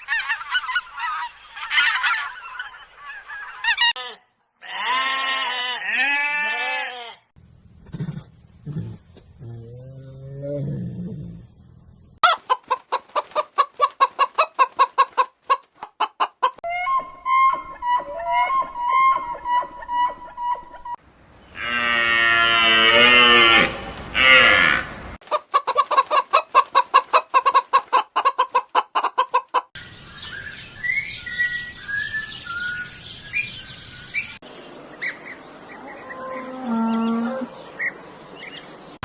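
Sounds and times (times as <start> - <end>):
drawn-out falling animal call: 0.0 - 9.4, 12.2 - 29.7, 35.0 - 37.6
bird chirps: 29.8 - 39.0.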